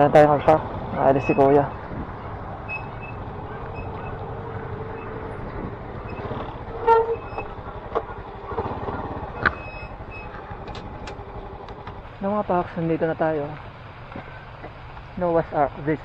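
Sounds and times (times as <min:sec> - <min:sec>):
small motorcycle engine idling: 0:00.0 - 0:16.0
horn toot: 0:06.2 - 0:07.5.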